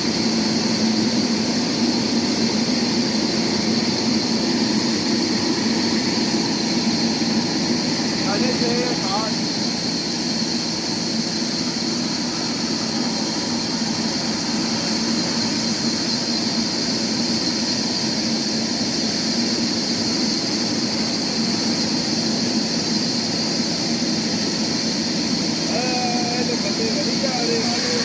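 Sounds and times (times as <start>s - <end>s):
sawmill machinery drone with hiss: 0.0s - 28.0s.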